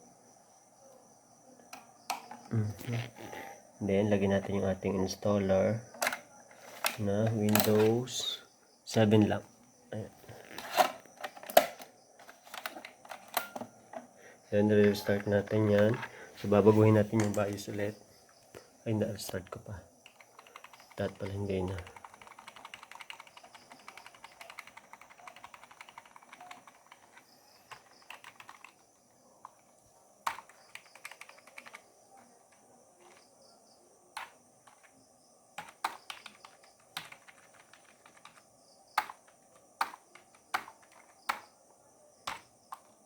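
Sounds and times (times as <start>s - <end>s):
computer keyboard key taps: 35.6s - 38.4s, 39.0s - 41.5s.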